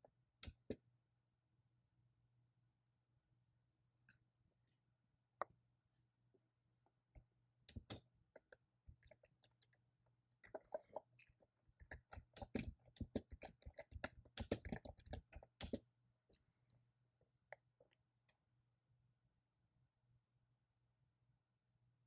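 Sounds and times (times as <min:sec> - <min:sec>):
typing on computer keyboard: 0:11.9 - 0:15.8.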